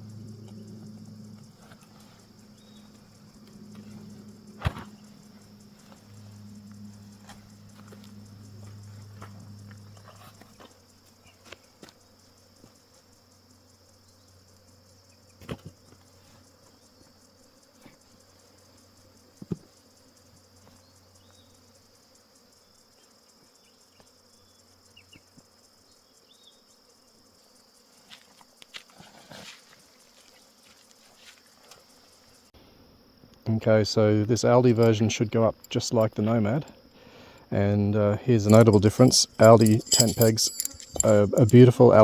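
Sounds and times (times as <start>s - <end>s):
high-pitched insect drone: 0.0s - 15.3s, 34.4s - 42.0s.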